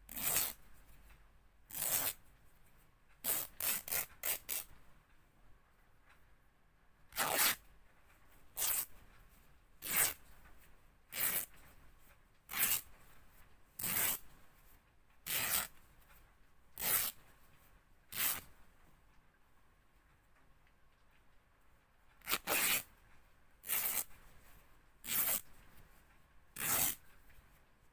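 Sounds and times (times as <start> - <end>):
fabric ripping: 0.1 - 0.6, 1.7 - 2.2, 7.2 - 7.6, 12.5 - 12.8, 13.8 - 14.2, 15.3 - 15.7, 16.8 - 17.1, 22.3 - 22.8, 23.7 - 24.0, 25.0 - 25.4, 26.6 - 27.0.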